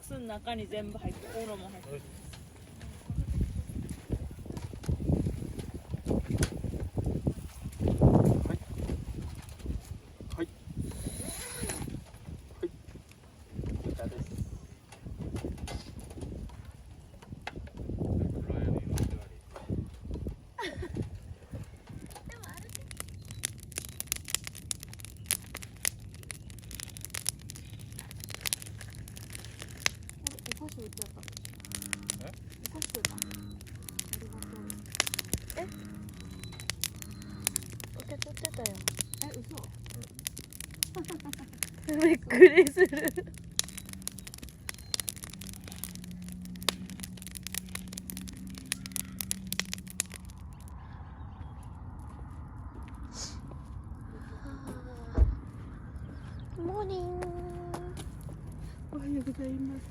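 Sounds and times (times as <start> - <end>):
burning wood popping: 0.0 - 59.9
campfire crackling: 0.0 - 59.9
low steady rumble: 0.0 - 59.9.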